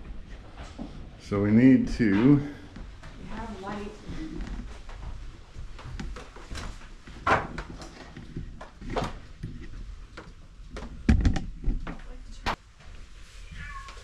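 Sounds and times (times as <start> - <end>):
knocks and thumps of objects: 7.0 - 12.6.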